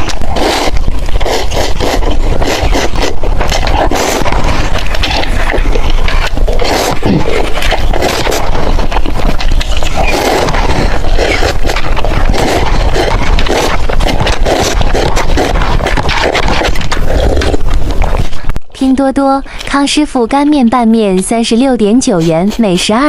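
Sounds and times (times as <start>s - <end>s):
chewing and slurping noodles: 0.0s - 18.7s.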